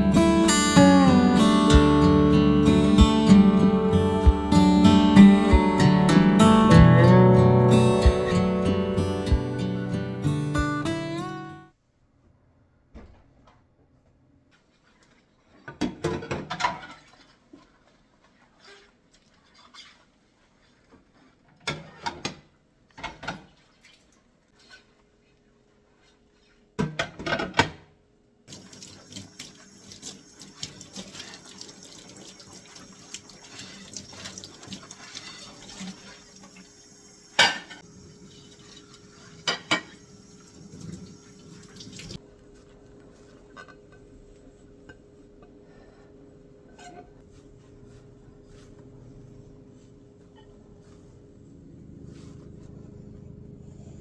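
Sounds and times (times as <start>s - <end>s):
kitchen tap running: 28.5s - 42.2s
dishes and cutlery clinking: 39.4s - 40.1s.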